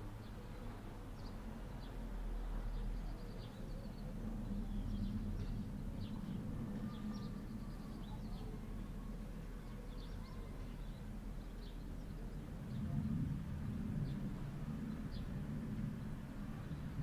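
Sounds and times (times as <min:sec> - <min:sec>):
small birds chirping: 0:01.2 - 0:13.3
steady low rumble: 0:10.5 - 0:17.0.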